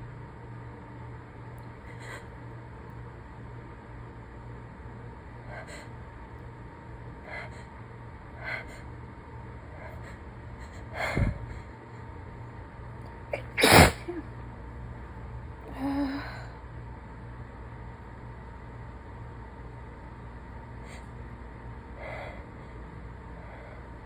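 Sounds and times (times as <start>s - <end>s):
person sneezing: 13.3s - 14.2s.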